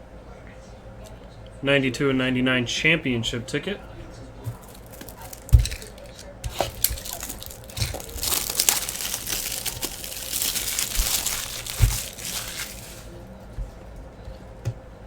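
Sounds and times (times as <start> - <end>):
foil wrapper crinkling: 4.5 - 13.3.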